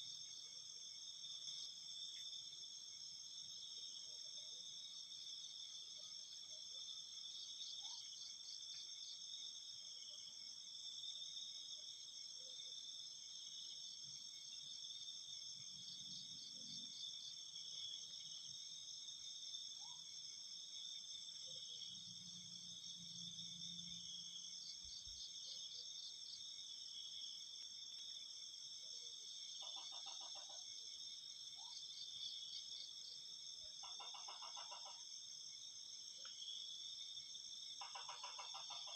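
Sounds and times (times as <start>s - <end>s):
low pulsed insect calls: 0.0s - 38.9s.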